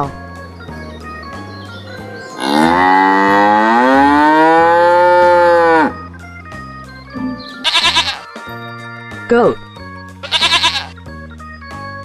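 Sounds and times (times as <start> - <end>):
cow mooing: 2.4 - 6.0.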